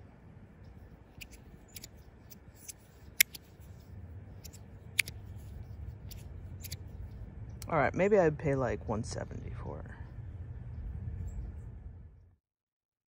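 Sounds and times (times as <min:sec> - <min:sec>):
magnetic fidget slider clicking: 0:01.2 - 0:03.6, 0:04.4 - 0:05.3, 0:06.1 - 0:06.8.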